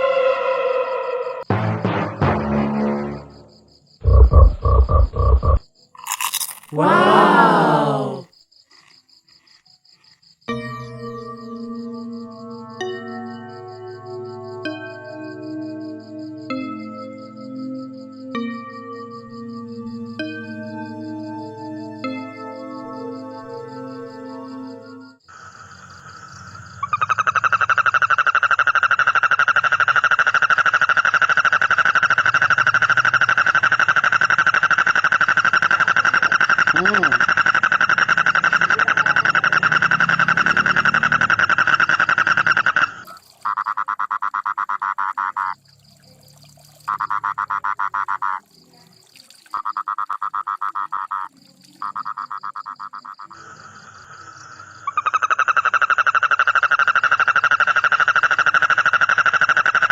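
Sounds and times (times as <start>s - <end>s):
frog trilling: 4.0s - 7.2s, 26.2s - 45.7s, 46.9s - 48.6s, 49.5s - 59.9s.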